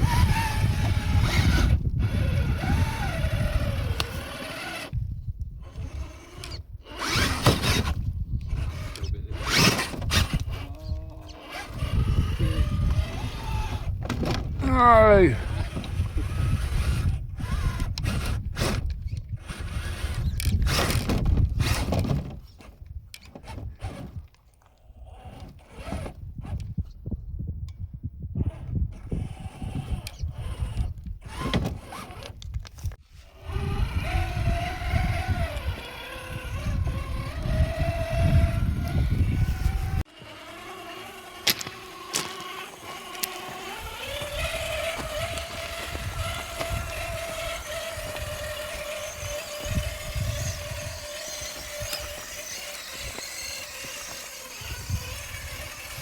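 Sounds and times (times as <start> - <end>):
electric toy truck motor whining: 0.0 - 22.2, 24.8 - 26.6, 28.4 - 32.5, 33.2 - 56.0.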